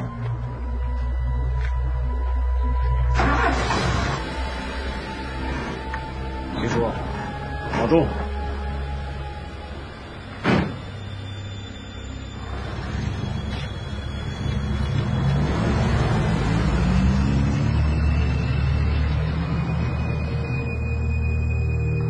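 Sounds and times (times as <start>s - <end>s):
car engine pulling away: 2.8s - 22.0s
car door shutting: 10.4s - 11.0s.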